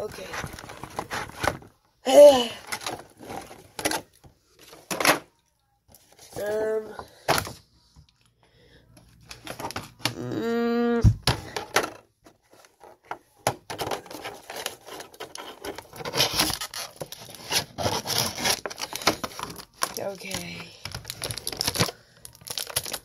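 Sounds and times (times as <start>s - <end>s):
plastic packaging being opened: 12.4s - 23.0s.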